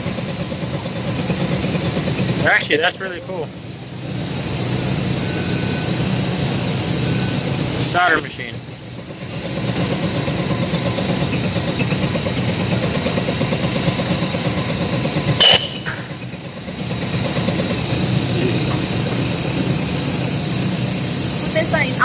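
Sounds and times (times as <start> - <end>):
production machinery humming: 0.0 - 22.0
short sharp sound: 15.4 - 16.2.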